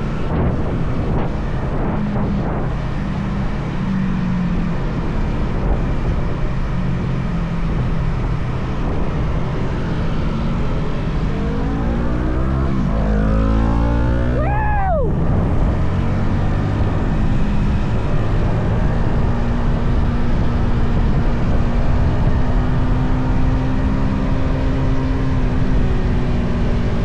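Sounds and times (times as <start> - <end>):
motorcycle engine accelerating: 0.0 - 27.0
wind rush: 0.0 - 27.0
loud rising and dropping tone: 7.4 - 19.6.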